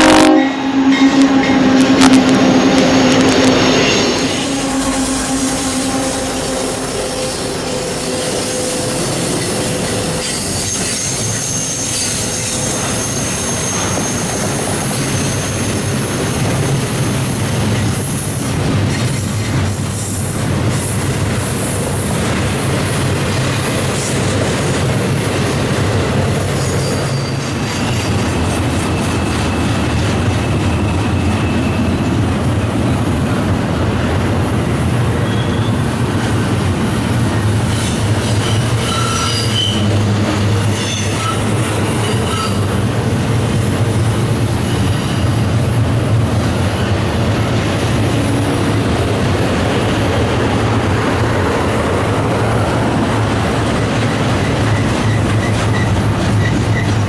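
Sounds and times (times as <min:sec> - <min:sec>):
train wheels rumbling on rail: 0:00.0 - 0:57.0
wheel squeal: 0:06.6 - 0:16.0, 0:35.2 - 0:35.8, 0:37.7 - 0:39.9, 0:40.6 - 0:42.7, 0:54.4 - 0:57.0.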